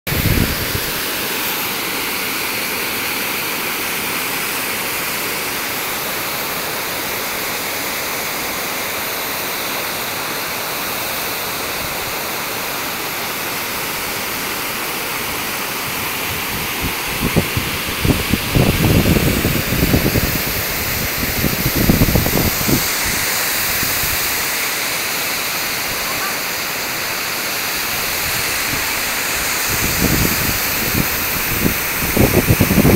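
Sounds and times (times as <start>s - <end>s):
waterfall rushing: 0.1s - 32.9s.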